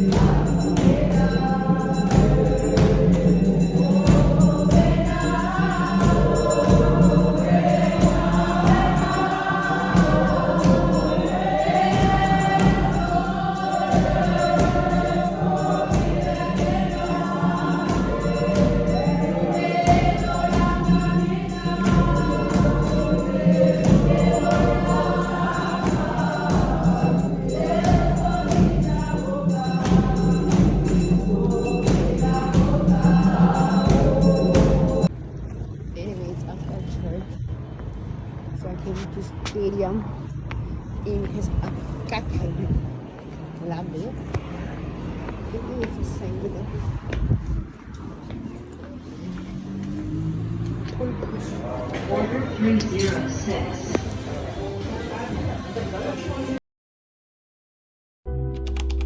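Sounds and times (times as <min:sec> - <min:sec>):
choir singing gospel: 0:00.0 - 0:35.1, 0:47.8 - 0:56.6
steady beat: 0:00.0 - 0:35.1.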